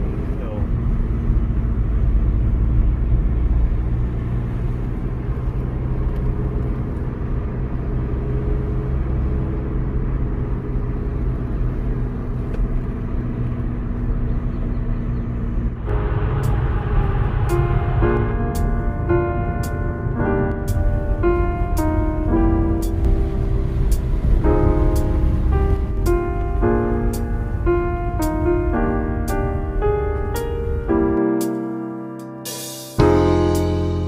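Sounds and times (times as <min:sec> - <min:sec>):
car engine and road rumble: 0:00.0 - 0:34.0
music: 0:15.9 - 0:34.0.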